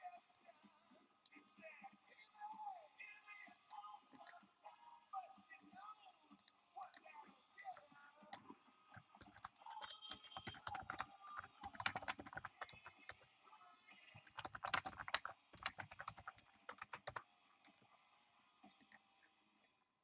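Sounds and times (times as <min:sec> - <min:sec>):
computer keyboard typing: 0:06.4 - 0:13.4, 0:14.1 - 0:17.9.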